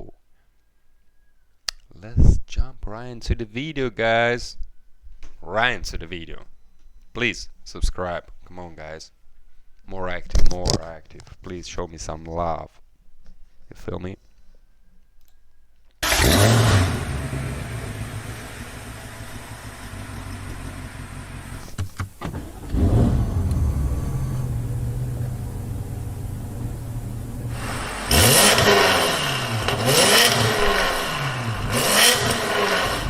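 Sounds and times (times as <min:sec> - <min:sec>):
car engine idling and revving: 0:16.0 - 0:33.0.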